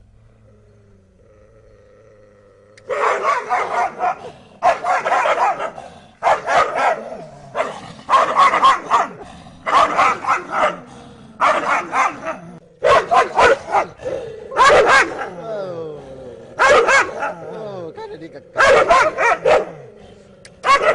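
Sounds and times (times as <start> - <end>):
faint low hum: 0.0 - 20.9
dogs barking: 2.9 - 15.5, 16.5 - 17.9, 18.5 - 20.9.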